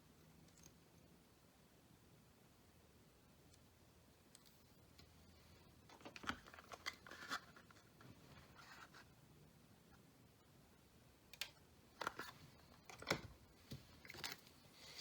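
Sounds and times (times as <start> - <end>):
packaging crinkling and clicking: 5.9 - 7.9.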